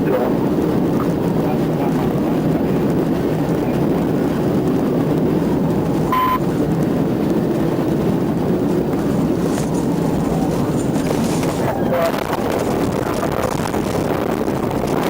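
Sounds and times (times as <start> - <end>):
car driving at high speed: 0.0 - 15.0
short beep: 6.1 - 6.4.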